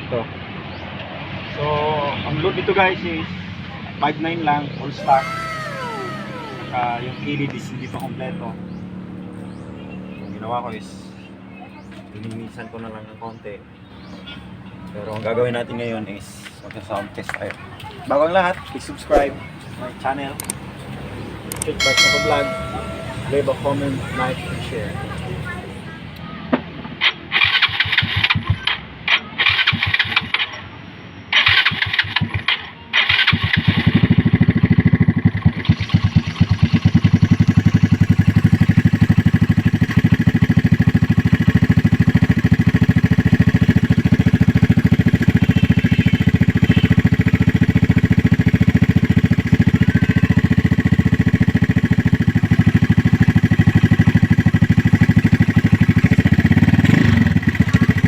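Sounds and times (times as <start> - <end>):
scooter engine running: 5.0 - 12.8, 13.7 - 26.2, 31.4 - 58.0
scooter engine cranking: 17.8 - 25.9, 27.3 - 30.5, 31.3 - 58.0.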